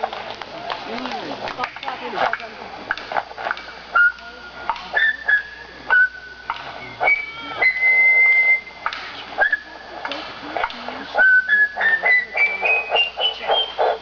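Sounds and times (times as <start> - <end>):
person whistling a tune: 5.0 - 6.3, 7.0 - 8.7, 9.4 - 9.7, 11.2 - 13.8.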